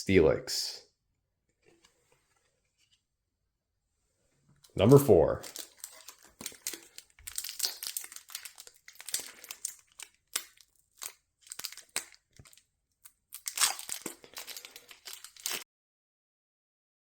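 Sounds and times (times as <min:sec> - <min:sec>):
foil wrapper crinkling and tearing: 0:04.8 - 0:15.6.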